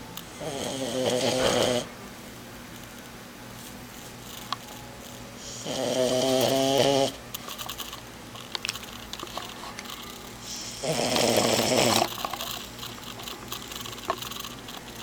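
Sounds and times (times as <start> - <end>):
puppy snoring: 0.3 - 1.9, 5.4 - 7.2, 10.4 - 15.0.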